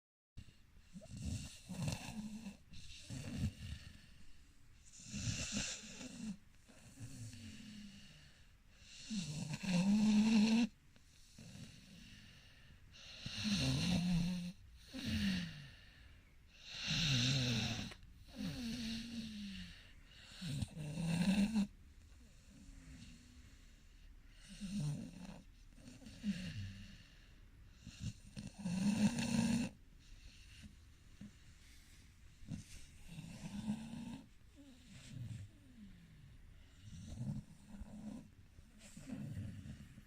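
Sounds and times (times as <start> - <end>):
rattling snoring: 0.9 - 3.9, 4.9 - 7.7, 9.0 - 12.1, 13.0 - 15.6, 24.4 - 27.0, 27.8 - 31.4, 32.4 - 36.0, 36.7 - 40.0.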